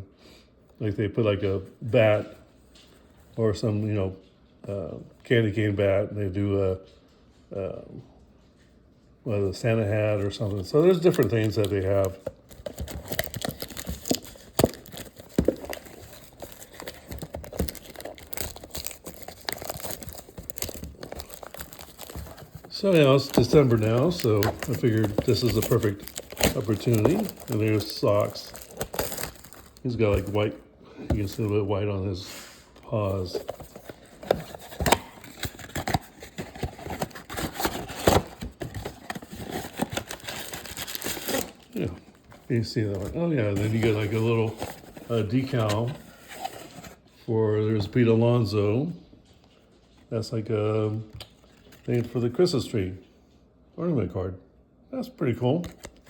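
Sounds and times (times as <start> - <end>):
packaging crinkling and rustling: 9.6 - 31.6, 32.8 - 47.0, 51.0 - 52.4, 55.6 - 56.0
cardboard box being handled: 10.8 - 30.4, 33.1 - 47.0.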